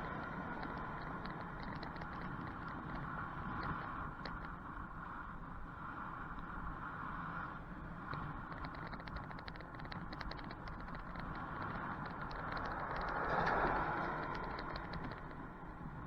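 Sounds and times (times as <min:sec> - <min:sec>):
passing vehicle: 0:00.0 - 0:04.1, 0:11.4 - 0:16.0
bicycle ticking and rattling: 0:00.0 - 0:06.8, 0:07.4 - 0:16.0
road and wind noise: 0:00.0 - 0:16.0.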